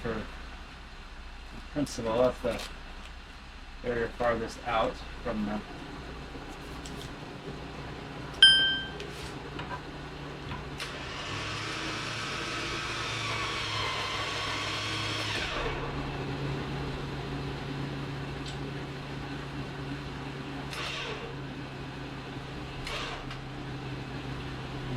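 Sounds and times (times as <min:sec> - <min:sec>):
electric winch motor whirring: 0:05.1 - 0:24.9
bright metallic ding: 0:08.4 - 0:09.0.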